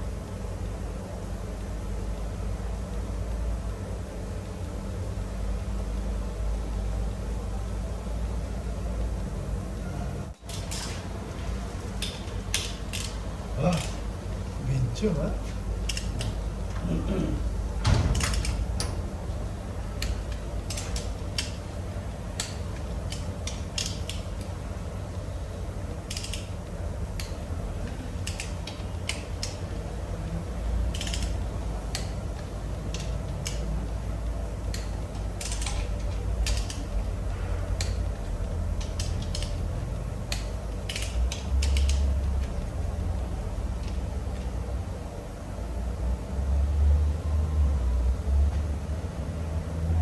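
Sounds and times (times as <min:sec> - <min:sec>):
steady low hum: 0:00.0 - 0:50.0
hand tools clicking and ratcheting: 0:12.0 - 0:14.1, 0:15.8 - 0:16.4, 0:18.1 - 0:18.9, 0:20.0 - 0:21.6, 0:22.4 - 0:24.5, 0:26.0 - 0:26.5, 0:27.2 - 0:29.8, 0:30.8 - 0:33.7, 0:34.6 - 0:37.0, 0:37.8 - 0:42.4.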